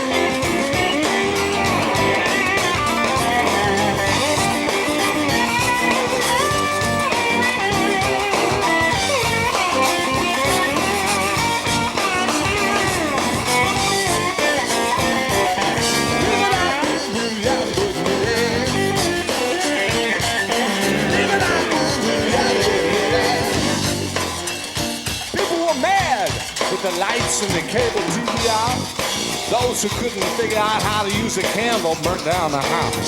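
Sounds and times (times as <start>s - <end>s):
lead guitar bending notes: 0.0s - 25.3s
live blues band playing: 0.0s - 33.0s.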